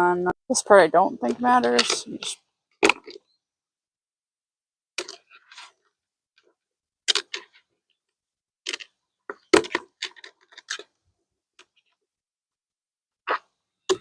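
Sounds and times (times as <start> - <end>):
plastic pots crinkling and clacking: 1.2 - 3.4, 5.0 - 12.0, 13.2 - 14.0.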